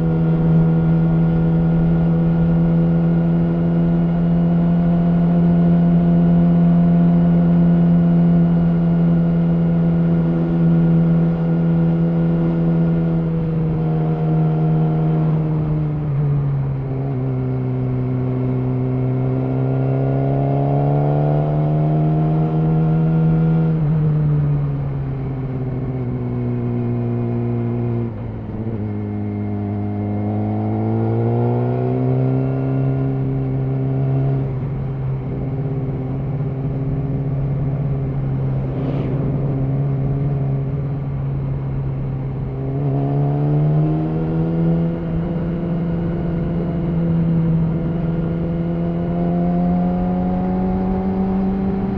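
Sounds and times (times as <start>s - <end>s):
motorcycle engine revving: 25.5s - 51.9s.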